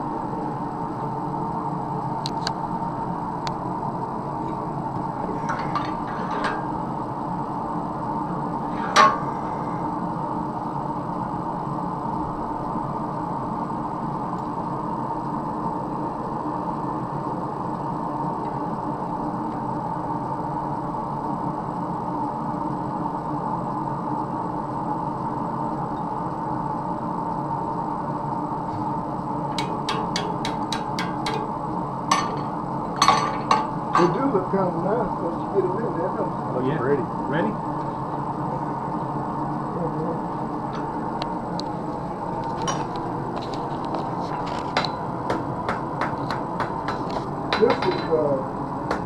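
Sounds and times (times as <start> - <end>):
forge blower humming: 0.0 - 49.0
sharp metal clank: 8.8 - 9.4, 32.1 - 34.2.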